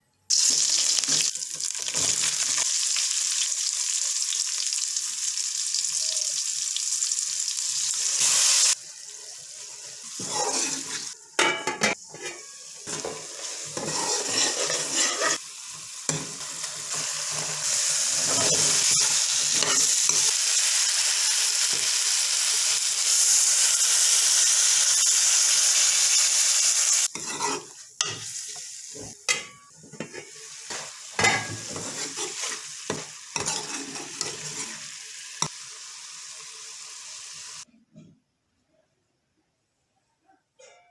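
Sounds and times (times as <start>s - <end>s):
food sizzling in a hot pan: 0.3s - 37.7s
stirring scraping and clatter: 13.8s - 15.4s.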